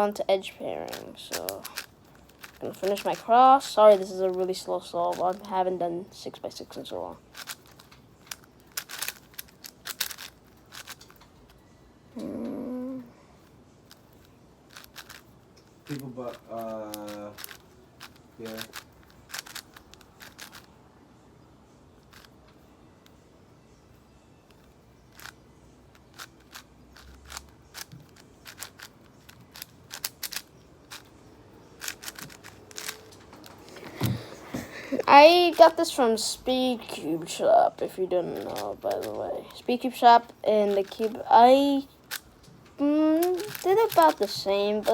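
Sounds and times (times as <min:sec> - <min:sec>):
speed cube layers clicking: 0:00.8 - 0:05.6, 0:07.2 - 0:11.4, 0:13.9 - 0:20.7, 0:22.0 - 0:22.3, 0:24.6 - 0:33.6, 0:35.1 - 0:35.9, 0:38.2 - 0:42.3, 0:42.9 - 0:44.9.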